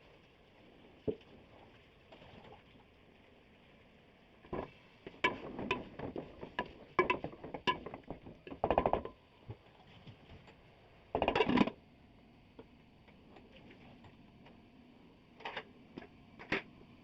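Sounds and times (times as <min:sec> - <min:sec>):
sharp knocks and clicks: 0:05.2 - 0:09.2.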